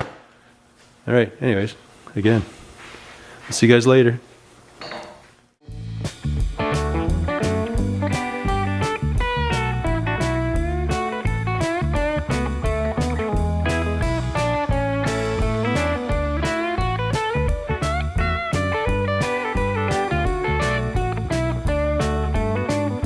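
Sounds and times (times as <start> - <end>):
guitar-led instrumental music: 5.7 - 23.0.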